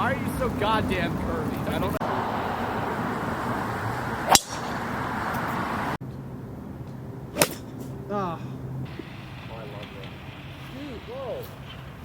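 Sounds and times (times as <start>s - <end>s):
golf club striking ball: 4.2s - 5.5s, 7.3s - 8.0s.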